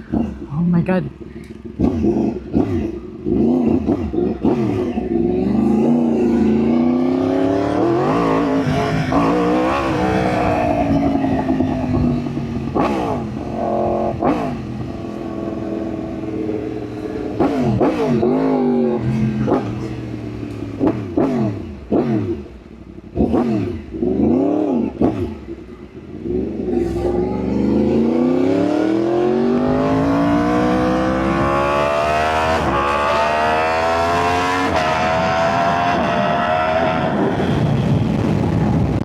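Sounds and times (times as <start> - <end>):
motorcycle engine revving: 0.0 - 39.0.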